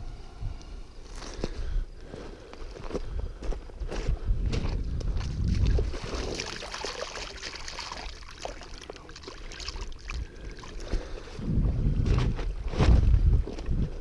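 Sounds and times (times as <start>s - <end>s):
wind rumbling on microphone: 0.0s - 0.9s, 3.1s - 6.8s, 9.9s - 14.0s
shallow water splashing: 5.2s - 11.4s.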